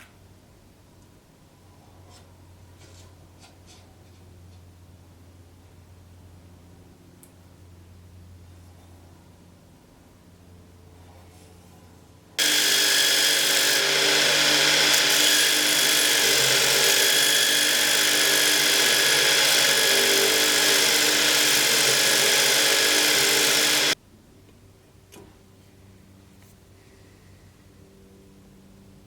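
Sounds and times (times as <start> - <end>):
power grinder grinding steel: 12.4 - 24.0.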